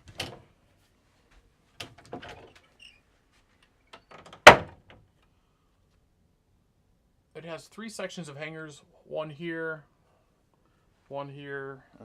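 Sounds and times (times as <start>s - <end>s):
closet door clicks and rattles: 0.0s - 0.5s, 1.8s - 2.7s, 3.9s - 5.0s.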